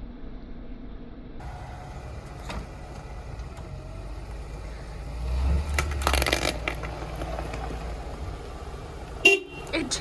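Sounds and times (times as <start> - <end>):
car engine running: 1.4 - 10.0
plastic crunching under tyre: 2.3 - 9.8.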